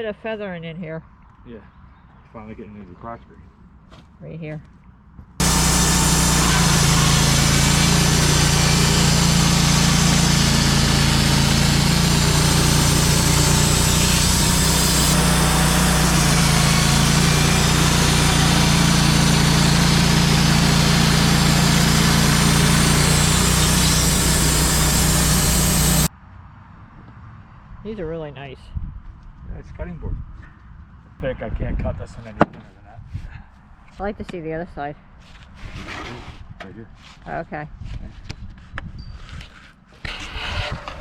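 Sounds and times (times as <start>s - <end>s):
bandsaw blade cutting log: 5.4s - 26.1s, 40.0s - 41.0s
engine hum: 5.4s - 26.1s.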